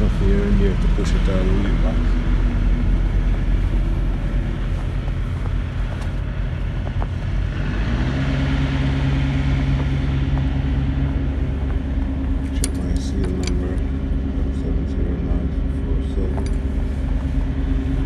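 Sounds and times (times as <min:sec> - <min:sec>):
diesel truck engine idling: 0:00.0 - 0:18.0.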